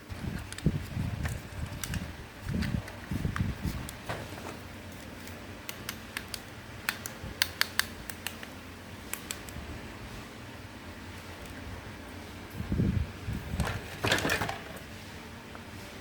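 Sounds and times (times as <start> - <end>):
small sharp plastic clicks: 5.6 - 9.6.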